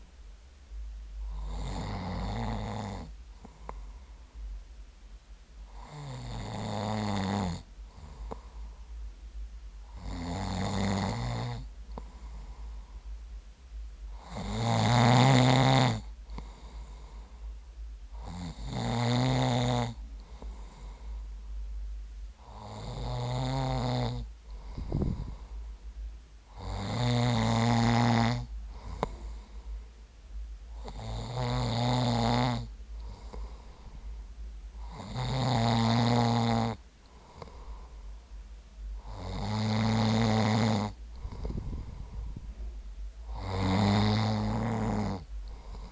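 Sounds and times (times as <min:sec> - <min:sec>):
man snoring: 0:01.3 - 0:03.8, 0:05.7 - 0:08.4, 0:09.9 - 0:12.6, 0:14.1 - 0:17.3, 0:18.1 - 0:21.1, 0:22.4 - 0:25.5, 0:26.5 - 0:29.5, 0:30.7 - 0:33.7, 0:34.8 - 0:37.8, 0:39.0 - 0:42.1, 0:43.2 - 0:45.9.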